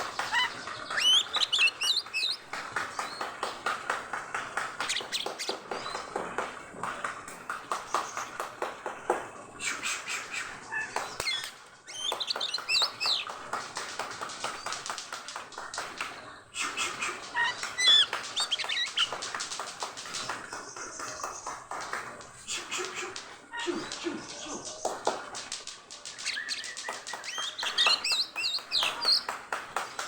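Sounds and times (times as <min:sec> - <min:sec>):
bird chattering notes: 0:00.0 - 0:02.5, 0:11.1 - 0:13.3, 0:17.3 - 0:19.2, 0:26.3 - 0:29.3
bird whistled phrases: 0:00.2 - 0:02.5, 0:11.2 - 0:13.3, 0:17.4 - 0:19.1, 0:26.3 - 0:29.3.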